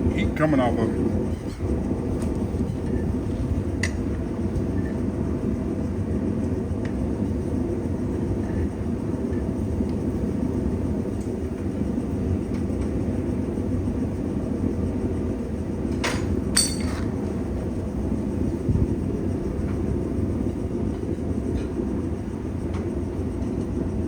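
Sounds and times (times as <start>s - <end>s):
metallic clinks: 16.6s - 17.1s.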